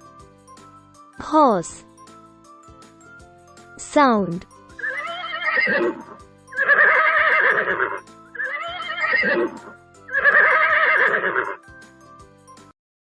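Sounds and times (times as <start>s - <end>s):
light background music: 0.0s - 12.8s
horse whinnying: 4.8s - 11.6s.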